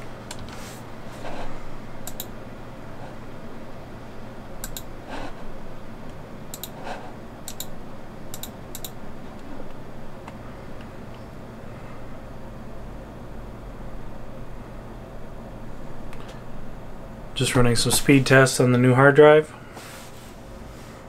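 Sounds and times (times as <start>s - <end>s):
steady low hum: 0.0s - 21.0s
mouse and keyboard clicks: 6.6s - 6.8s.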